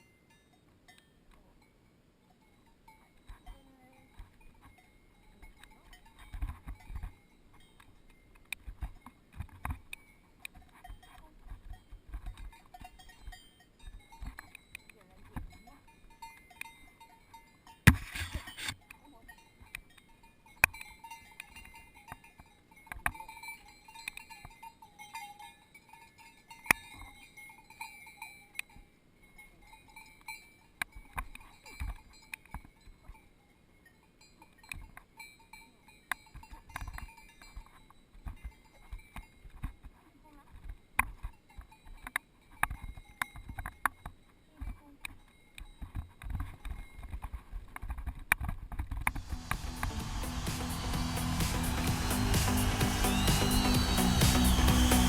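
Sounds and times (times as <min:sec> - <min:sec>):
cowbells clanking: 0:00.0 - 0:39.8, 0:49.1 - 0:55.0
loud burst of noise: 0:49.2 - 0:55.0.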